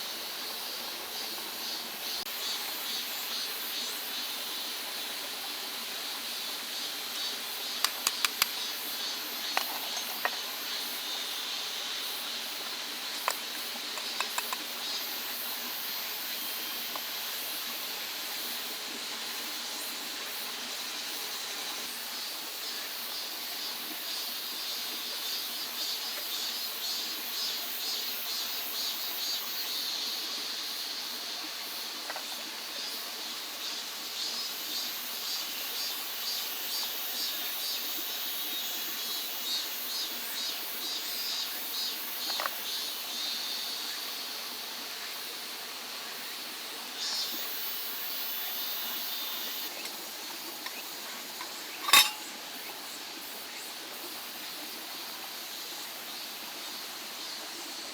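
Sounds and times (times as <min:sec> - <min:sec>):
insect pulsing chirp: 0:06.4 - 0:17.5.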